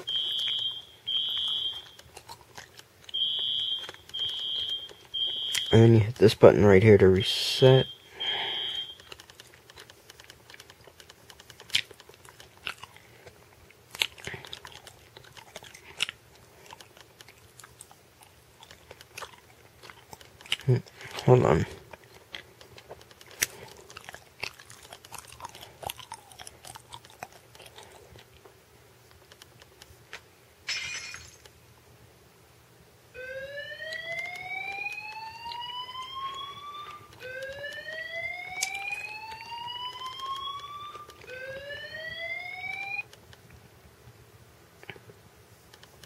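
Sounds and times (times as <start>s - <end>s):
siren tone from phone speaker: 0.0s - 2.0s, 3.2s - 5.9s, 7.6s - 9.0s, 33.2s - 43.1s.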